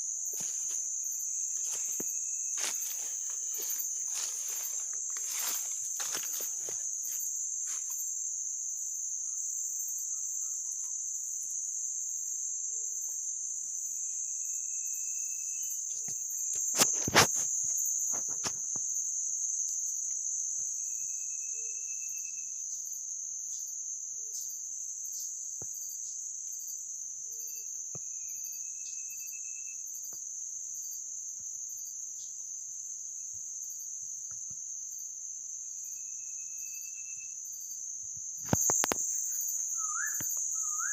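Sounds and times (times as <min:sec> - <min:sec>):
insects buzzing: 0:00.0 - 0:40.9
faint whistle notes: 0:39.7 - 0:40.9.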